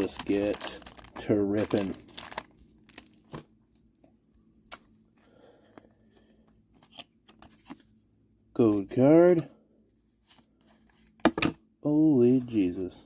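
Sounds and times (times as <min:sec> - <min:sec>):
foil pack crinkling: 0:00.0 - 0:03.4.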